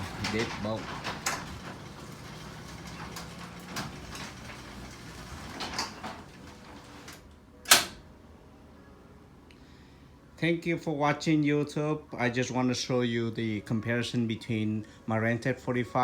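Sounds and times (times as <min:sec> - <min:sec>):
garage door opener running: 0:00.0 - 0:08.0.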